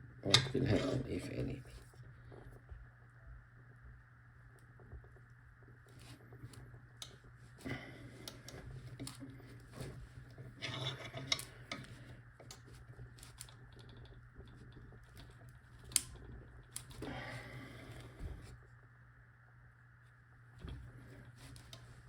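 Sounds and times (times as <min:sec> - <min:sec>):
vise screw scraping: 0:10.5 - 0:11.9.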